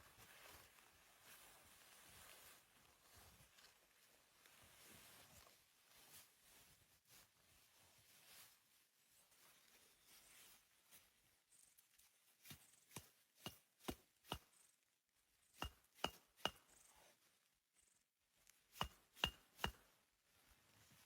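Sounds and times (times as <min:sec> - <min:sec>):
blade chopping into wood: 0:12.5 - 0:14.5, 0:15.6 - 0:16.6, 0:18.8 - 0:19.8.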